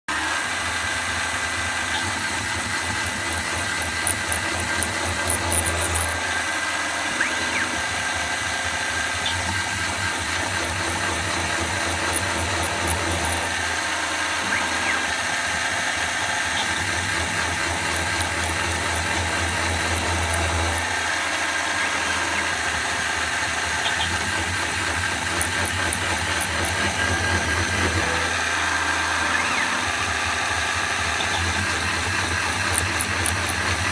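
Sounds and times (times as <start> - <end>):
milling machine spindle whine: 0.2 - 33.9
drill bit squealing in metal: 2.8 - 6.4, 10.1 - 13.7, 16.5 - 20.9, 23.8 - 28.2, 31.2 - 33.9.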